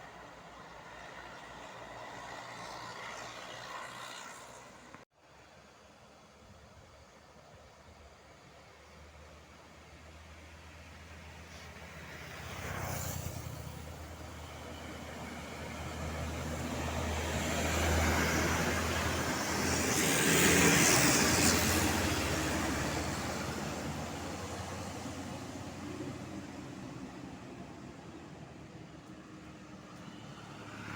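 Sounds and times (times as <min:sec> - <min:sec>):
vehicle passing: 0:11.8 - 0:30.9.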